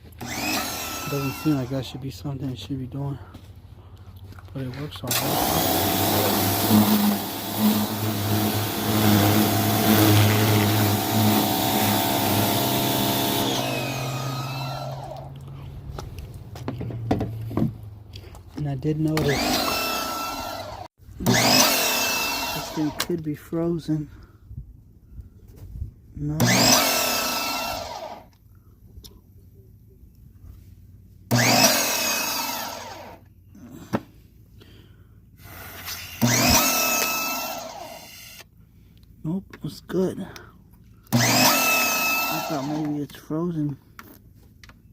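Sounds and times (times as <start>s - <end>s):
electric pressure washer running: 0.1s - 1.8s, 5.1s - 15.3s, 19.2s - 23.1s, 26.4s - 28.2s, 31.3s - 33.2s, 35.5s - 38.4s, 41.1s - 43.0s.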